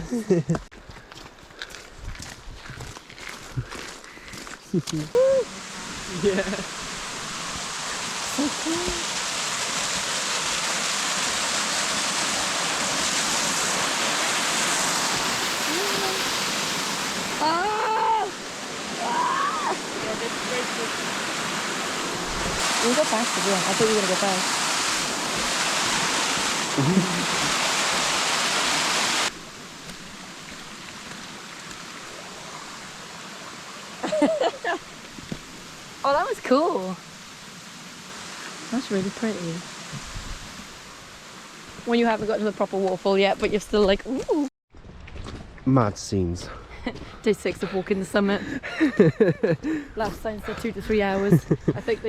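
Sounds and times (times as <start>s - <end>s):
person speaking: 4.7s - 5.5s, 8.3s - 9.1s, 15.7s - 16.3s, 26.8s - 27.5s, 50.0s - 52.0s
mountain stream rushing: 5.0s - 44.5s.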